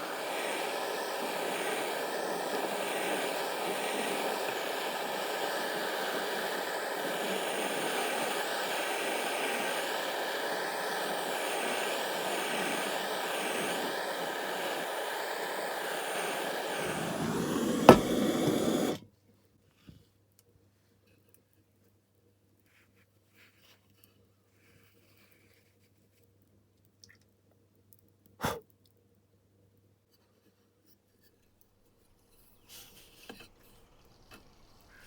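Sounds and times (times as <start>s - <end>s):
gas torch flame roaring: 0.0s - 19.0s.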